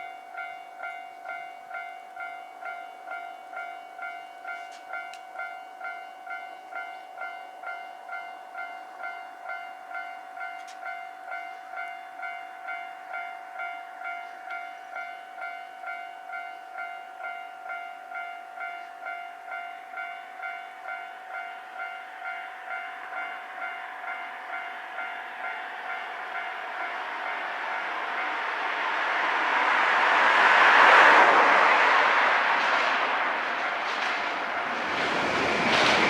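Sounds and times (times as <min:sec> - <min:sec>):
level crossing warning bell: 0:00.0 - 0:29.9
approaching train rushing: 0:19.1 - 0:36.0.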